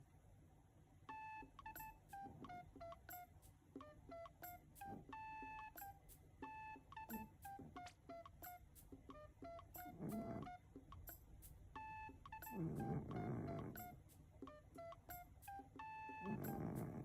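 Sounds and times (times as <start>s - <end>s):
plinky electronic tune: 1.1s - 11.1s, 11.8s - 17.0s.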